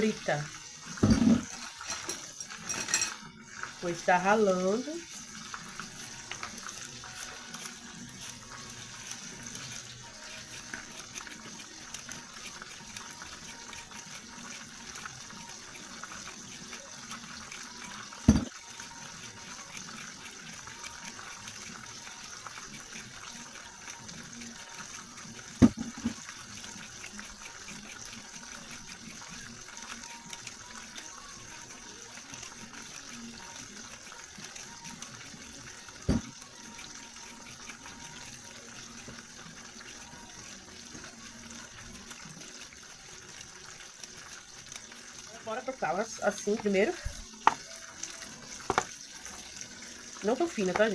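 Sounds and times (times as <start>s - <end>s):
tap running into a sink: 0.9s - 3.1s, 18.1s - 18.6s, 25.5s - 26.4s, 36.0s - 36.4s, 46.3s - 49.6s.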